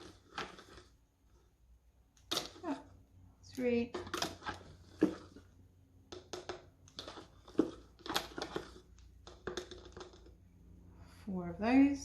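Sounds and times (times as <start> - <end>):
spoon scraping flour: 0.0 - 1.6, 3.6 - 5.6, 6.8 - 10.3.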